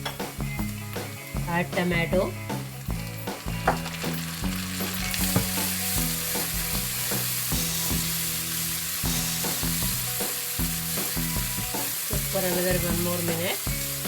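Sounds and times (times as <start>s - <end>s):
tomato sizzling in a frying pan: 0.0s - 14.0s
spatula stirring in a pan: 3.0s - 14.0s.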